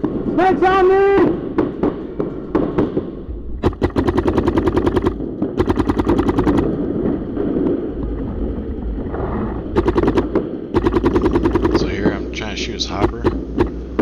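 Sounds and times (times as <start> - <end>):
paintball marker firing: 3.6 - 6.7, 9.8 - 12.2, 12.9 - 14.0.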